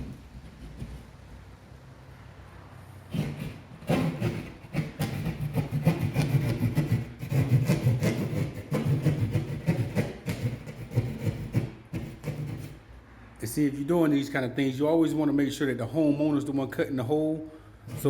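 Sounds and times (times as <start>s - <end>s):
hand saw cutting through wall: 3.1s - 12.8s.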